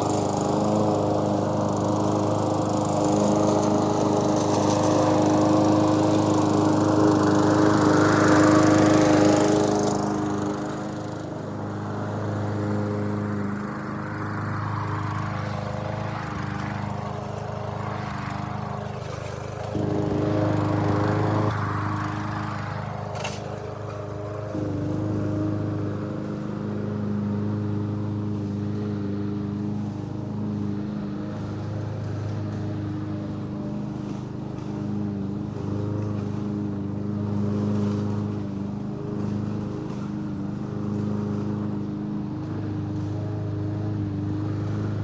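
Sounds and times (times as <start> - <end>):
lawn mower engine running: 0.0 - 45.0.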